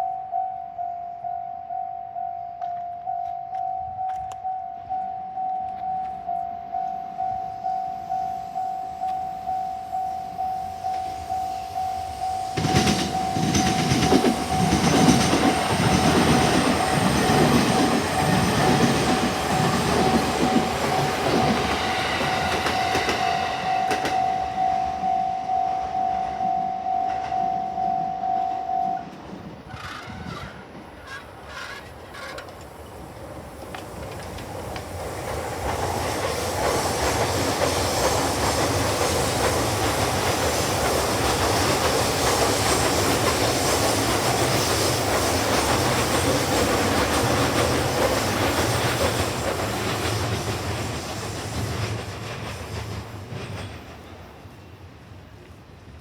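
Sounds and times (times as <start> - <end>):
level crossing warning bell: 0.0 - 29.3
electric train rumbling and clattering: 2.5 - 56.0.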